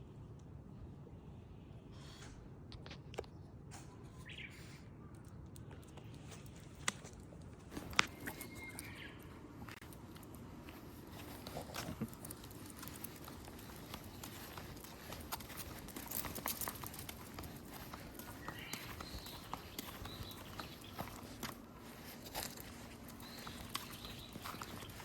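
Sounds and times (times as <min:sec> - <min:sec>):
light footsteps: 0:06.2 - 0:25.0.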